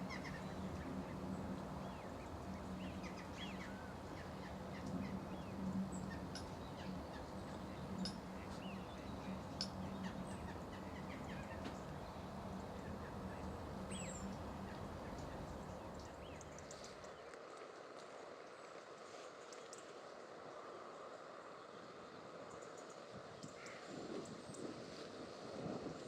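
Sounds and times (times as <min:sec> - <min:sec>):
wild birds chirping: 0:00.0 - 0:17.3
steady background noise: 0:00.0 - 0:26.0.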